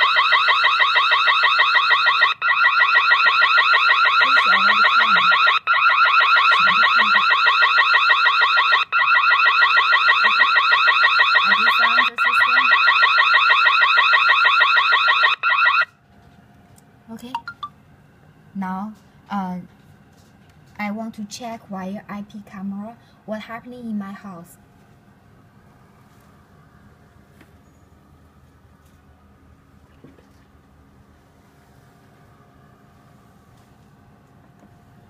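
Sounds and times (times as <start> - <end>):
alarm siren warbling electronic tone: 0.0 - 15.9.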